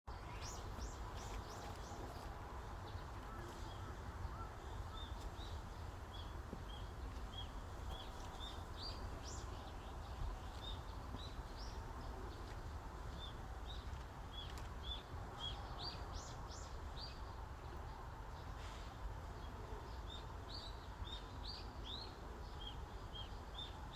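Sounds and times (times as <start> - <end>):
small birds chirping: 2.9 - 17.2.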